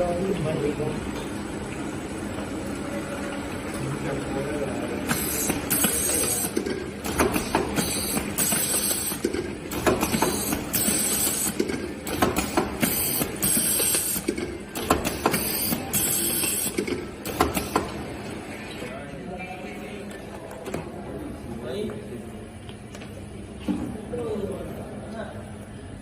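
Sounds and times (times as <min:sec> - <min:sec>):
labeling machine sharp clicks: 0:05.1 - 0:18.0.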